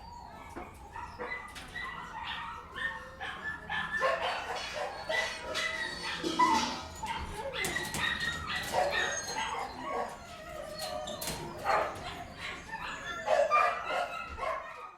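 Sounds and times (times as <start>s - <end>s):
dogs barking and whimpering: 0.0s - 14.9s.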